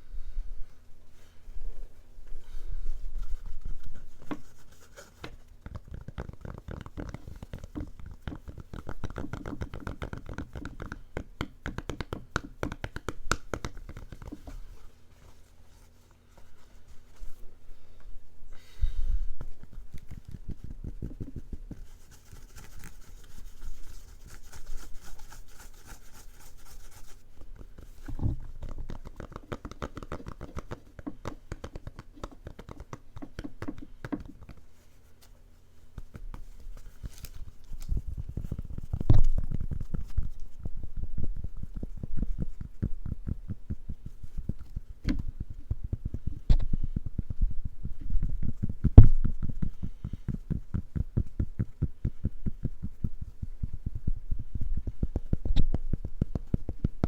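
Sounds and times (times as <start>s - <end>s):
quick scratching strokes: 19.5s - 28.1s.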